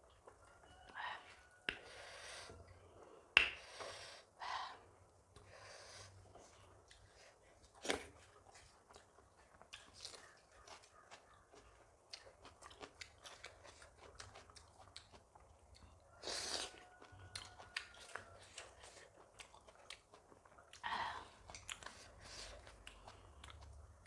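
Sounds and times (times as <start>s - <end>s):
chewing clicks and mouth smacks: 7.7s - 24.0s.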